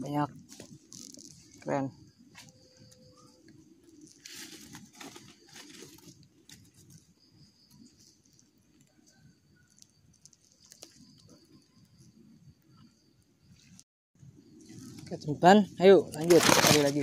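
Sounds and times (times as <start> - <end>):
dry bamboo and leaves rustling: 0.0 - 8.8, 14.6 - 17.0.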